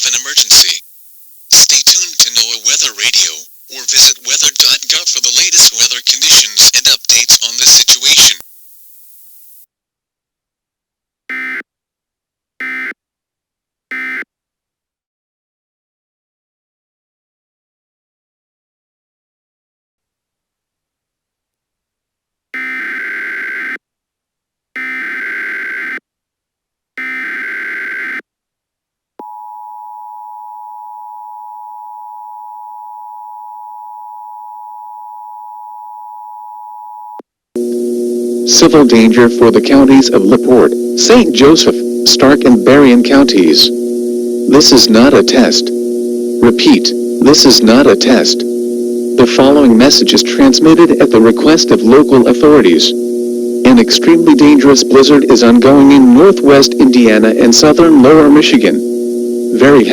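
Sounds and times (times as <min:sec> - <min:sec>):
buzzing digital tone bursts: 0:11.3 - 0:11.6, 0:12.6 - 0:12.9, 0:13.9 - 0:14.2, 0:22.6 - 0:23.8, 0:24.8 - 0:26.0, 0:27.0 - 0:28.2, 0:37.6 - 0:59.9.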